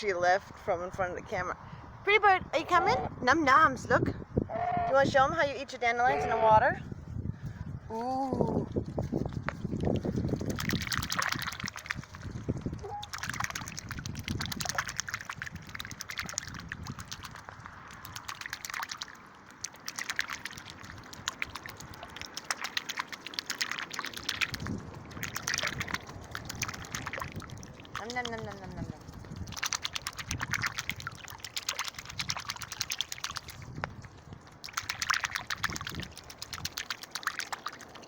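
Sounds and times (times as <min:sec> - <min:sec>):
goose bill clicking and slurping: 0:08.2 - 0:38.0.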